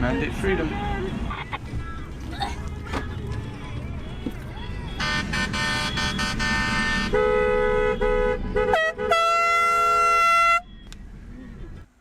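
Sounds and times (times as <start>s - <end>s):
vehicle horns honking: 4.0s - 10.9s
long horn blast: 5.0s - 10.6s.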